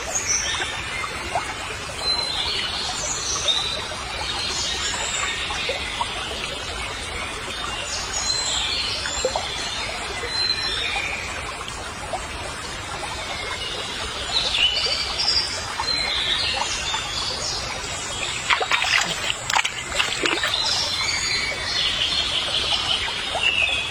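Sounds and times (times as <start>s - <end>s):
sharp splashes: 17.8s - 21.0s
hiss of water: 17.9s - 20.8s
small birds chirping: 17.9s - 20.9s.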